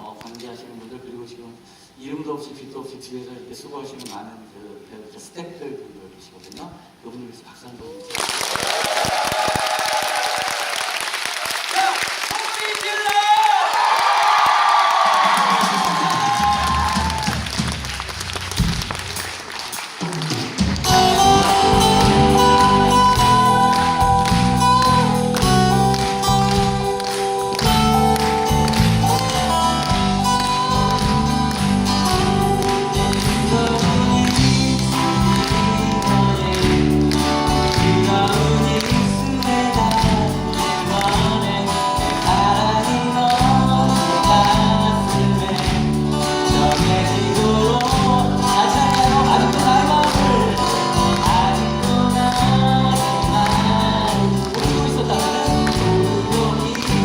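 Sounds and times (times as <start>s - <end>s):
live band music: 15.2s - 57.0s
acoustic guitar: 15.6s - 57.0s
person singing: 20.8s - 57.0s.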